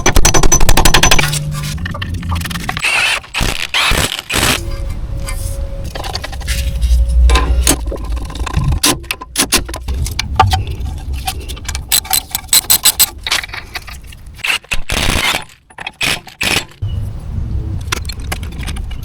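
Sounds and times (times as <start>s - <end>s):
metal tools clinking: 10.5s - 14.2s
quick clicks: 11.9s - 13.2s.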